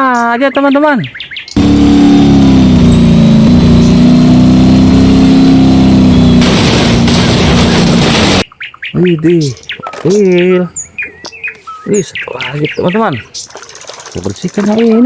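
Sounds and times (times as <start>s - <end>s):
harsh rushing noise: 1.6s - 8.4s
heavy engine droning: 1.6s - 8.4s.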